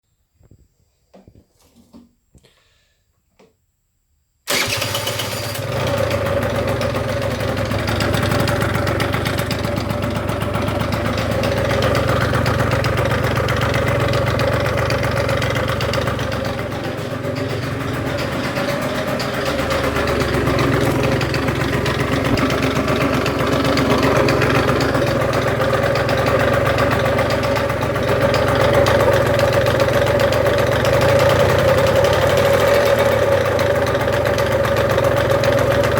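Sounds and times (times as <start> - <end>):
engine starting and idling: 4.5 - 35.9
rattling noise: 7.2 - 27.7.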